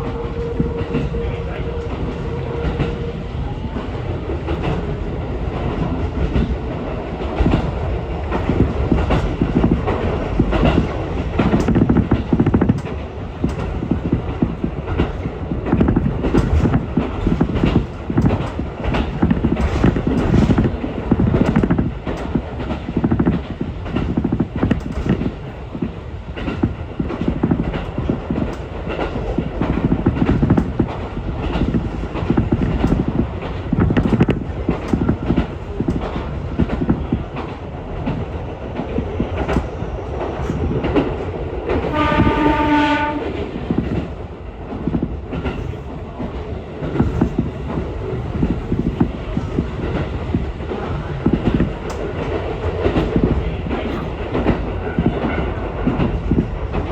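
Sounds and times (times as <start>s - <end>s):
train horn: 0.0s - 3.7s, 41.8s - 43.6s
electric train rumbling: 0.0s - 56.9s
wheels clicking over rail joints: 4.3s - 56.9s.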